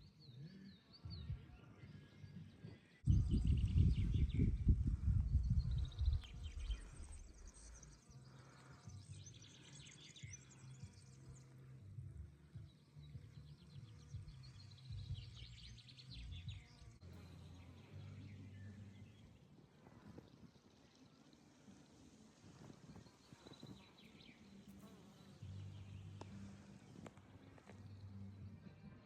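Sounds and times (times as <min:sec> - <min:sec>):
small birds chirping: 0:00.0 - 0:29.0.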